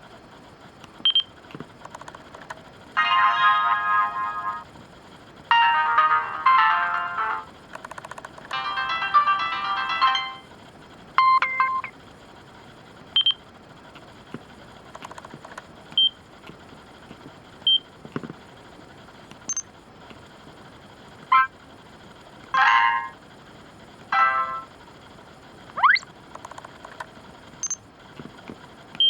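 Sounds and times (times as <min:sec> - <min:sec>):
electronic multi-note jingle: 0:03.0 - 0:04.6, 0:05.5 - 0:07.5, 0:08.5 - 0:10.5, 0:22.6 - 0:23.2, 0:24.2 - 0:24.7
camera electronic beeps and chimes: 0:25.8 - 0:26.0.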